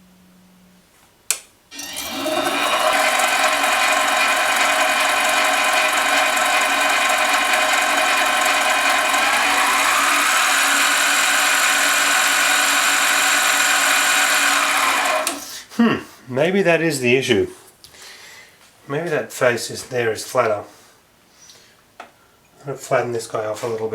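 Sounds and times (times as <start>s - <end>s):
lathe motor whining: 1.7s - 15.6s.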